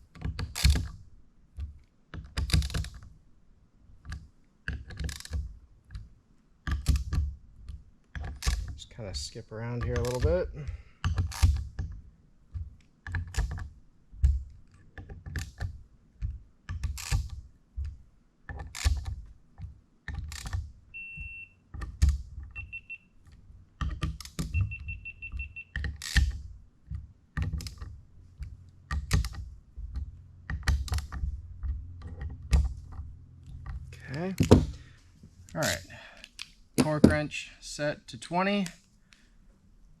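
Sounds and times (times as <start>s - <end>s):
short electronic beeps: 21.0s - 21.6s, 22.6s - 23.1s, 24.5s - 25.8s
tools and parts clacking: 25.7s - 37.2s.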